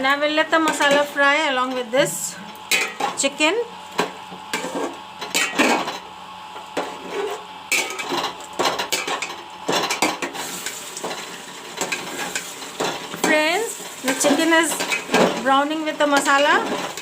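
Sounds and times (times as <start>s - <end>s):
chicken frying in hot oil: 2.6s - 17.0s
utensil scraping pan: 4.5s - 5.8s, 6.8s - 17.0s.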